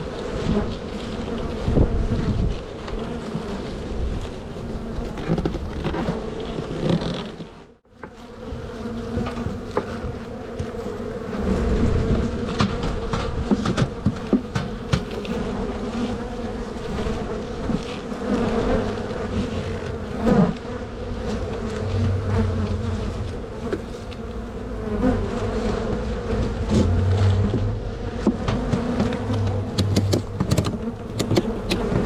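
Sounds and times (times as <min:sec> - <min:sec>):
bees buzzing: 0:08.0 - 0:32.0
clicks and knocks: 0:26.4 - 0:31.9.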